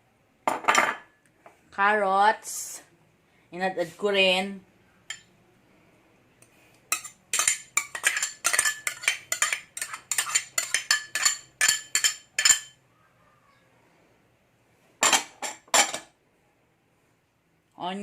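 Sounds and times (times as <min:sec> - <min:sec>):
utensil scraping a bowl: 0:06.9 - 0:12.7.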